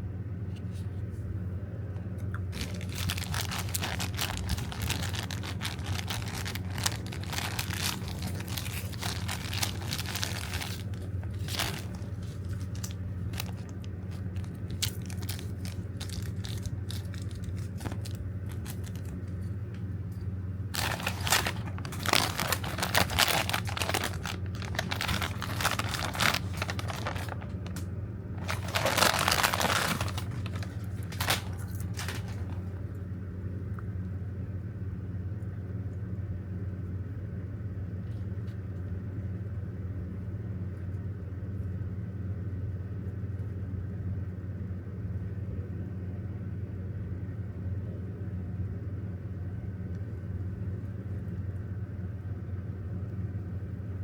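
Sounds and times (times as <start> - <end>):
steady low hum: 0.0 - 54.0
plastic packaging crinkling and tearing: 2.4 - 19.6, 20.7 - 32.8.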